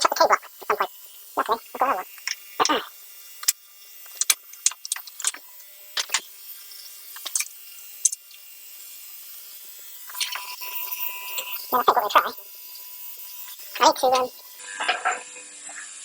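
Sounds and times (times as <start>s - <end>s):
clicks and rattles of small parts: 1.4s - 2.8s, 3.4s - 6.4s, 7.1s - 8.5s, 10.1s - 10.6s.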